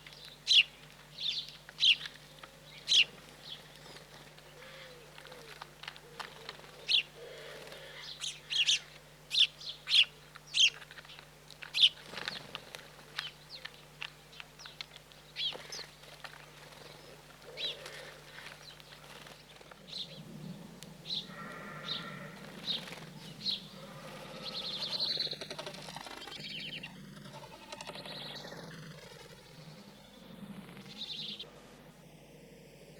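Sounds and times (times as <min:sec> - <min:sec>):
small birds chirping: 0:00.0 - 0:31.5
lower longer bird call: 0:20.0 - 0:25.4.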